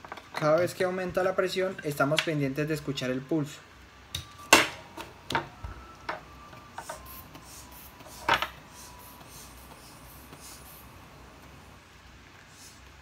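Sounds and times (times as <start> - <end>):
hand bulb hissing: 4.1 - 11.8.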